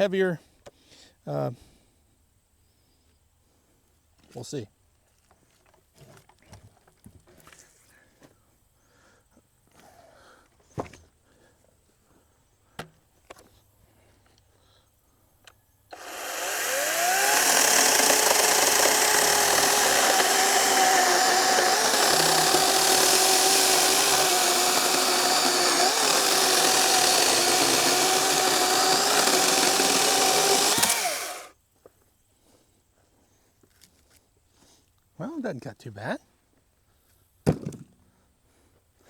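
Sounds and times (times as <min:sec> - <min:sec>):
chainsaw cutting log: 0:15.9 - 0:31.5.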